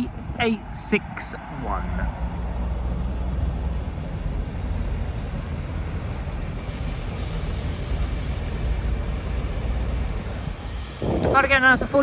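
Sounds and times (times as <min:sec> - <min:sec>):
diesel train engines rumbling: 0:00.0 - 0:12.0
hiss: 0:06.6 - 0:11.0.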